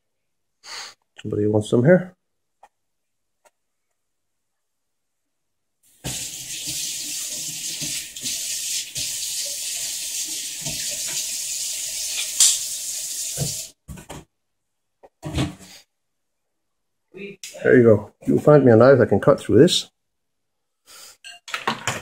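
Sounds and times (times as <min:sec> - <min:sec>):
water running from tap: 0:05.9 - 0:13.8.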